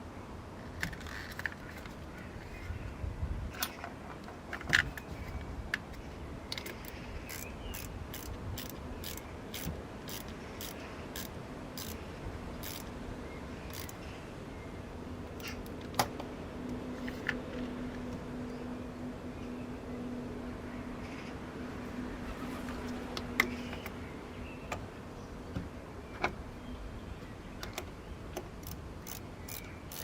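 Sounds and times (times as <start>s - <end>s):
ratchet wrench clicking: 6.5s - 12.0s, 12.6s - 12.9s, 13.7s - 14.0s, 28.6s - 30.0s.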